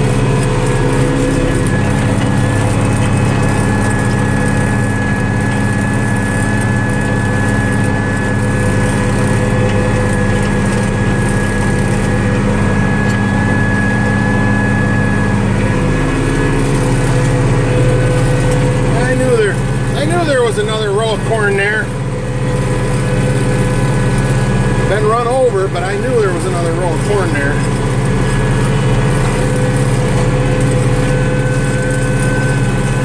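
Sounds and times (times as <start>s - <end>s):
tractor diesel engine under load: 0.0s - 33.0s.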